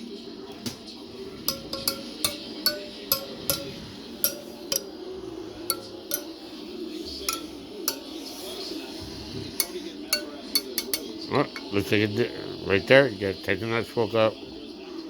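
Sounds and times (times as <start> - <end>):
metal spokes pinging: 1.2 - 11.8.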